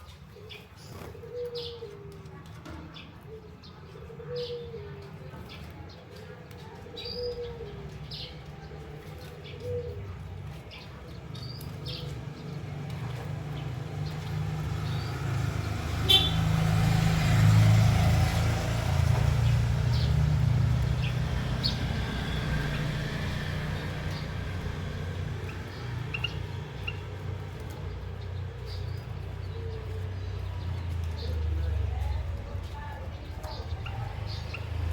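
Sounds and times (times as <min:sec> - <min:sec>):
passing vehicle engine rumble: 0:04.0 - 0:34.9
finches chirping: 0:19.4 - 0:32.3, 0:33.1 - 0:34.9.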